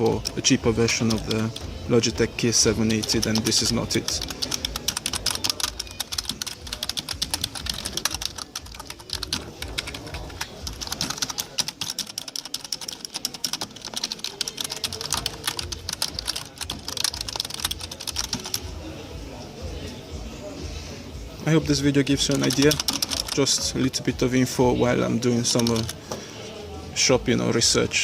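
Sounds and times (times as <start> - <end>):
fast typing on keyboard: 0.0 - 1.7, 2.3 - 18.8, 22.1 - 23.8, 25.4 - 26.0.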